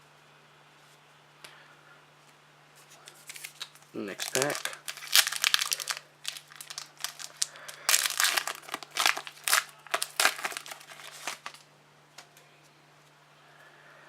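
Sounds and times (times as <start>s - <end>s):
wrapper tearing and crinkling: 3.1s - 11.7s.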